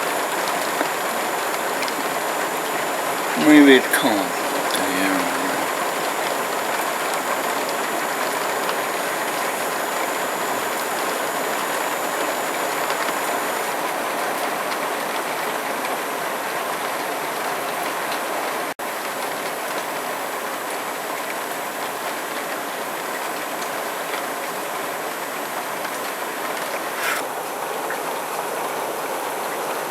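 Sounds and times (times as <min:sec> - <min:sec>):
heavy rain pouring: 0:00.0 - 0:17.6.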